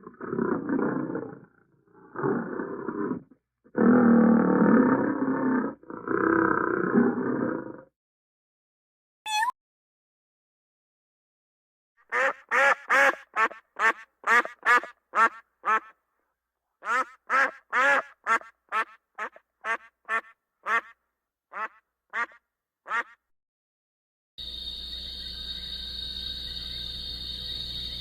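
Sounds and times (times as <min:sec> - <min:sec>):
duck quacking: 0:12.1 - 0:15.9, 0:16.8 - 0:23.2
insect-like ambience with high tone: 0:24.4 - 0:28.0.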